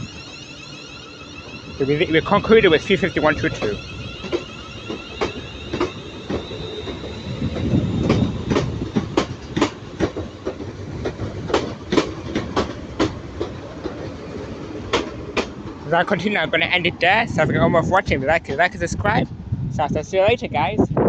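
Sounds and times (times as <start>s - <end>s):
faint high whine: 0.0s - 8.8s
train wheels clacking: 0.0s - 17.3s
train rumble: 0.0s - 21.0s.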